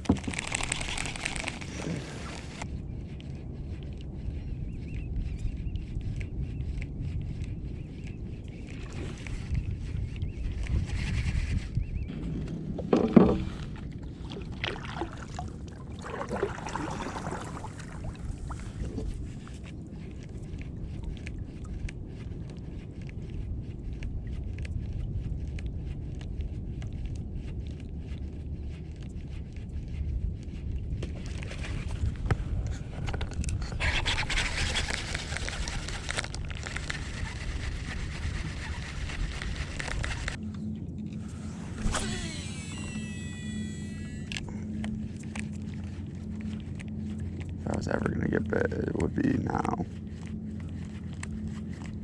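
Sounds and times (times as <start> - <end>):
steady low rumble: 1.1 - 52.0
scraping and knocking on kayak: 10.6 - 19.6, 30.9 - 40.4.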